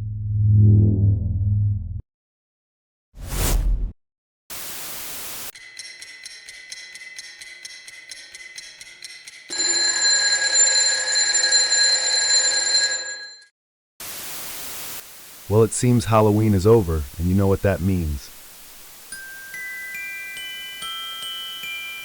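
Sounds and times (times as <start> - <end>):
static hiss: 14.0 - 20.6.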